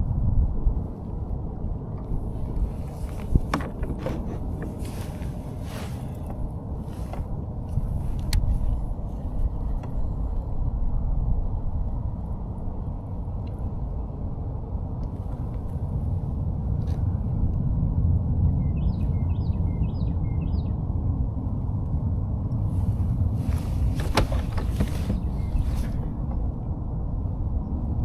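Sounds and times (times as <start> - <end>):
wind buffeting microphone: 0.0 - 28.0
water moving past kayak: 2.0 - 9.5.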